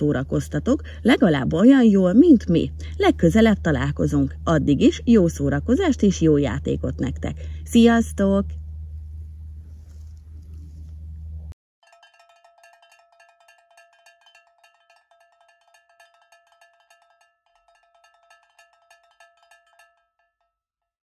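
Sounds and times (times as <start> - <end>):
bell-like metallic jingle: 11.8 - 20.5.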